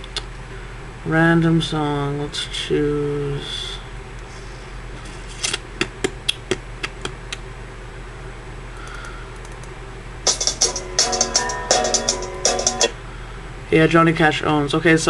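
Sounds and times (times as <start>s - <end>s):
song with drums: 10.3s - 12.9s.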